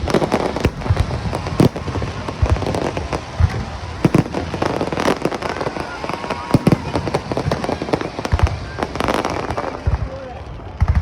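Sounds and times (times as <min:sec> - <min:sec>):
firework bangs and crackles: 0:00.0 - 0:11.0.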